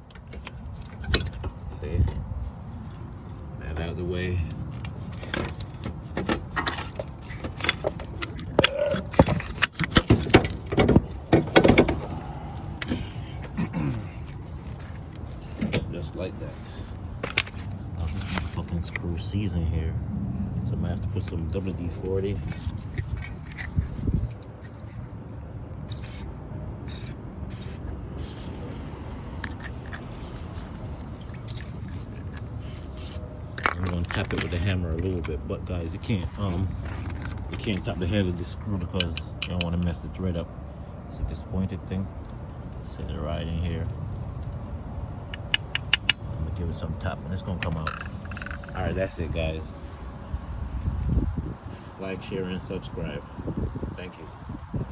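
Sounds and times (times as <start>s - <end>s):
metal tools clanking and rattling: 4.6s - 16.0s, 36.0s - 40.0s, 47.4s - 49.5s.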